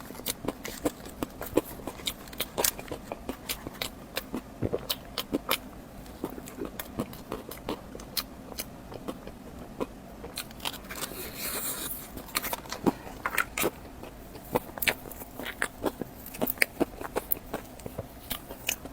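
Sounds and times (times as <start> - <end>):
close biting and chewing: 0.0 - 18.9
wet mouth clicks and crunches: 12.3 - 18.9.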